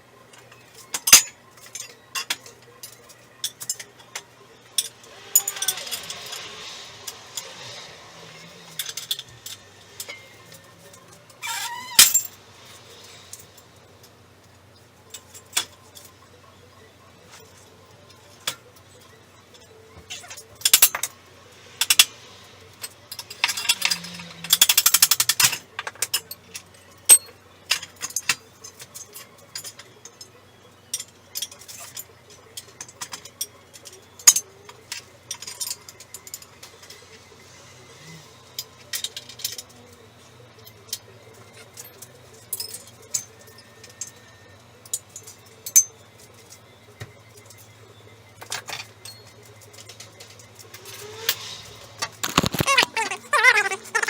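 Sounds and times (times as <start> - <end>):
metal tools clinking: 4.8 - 6.5, 11.4 - 12.4, 52.0 - 54.0.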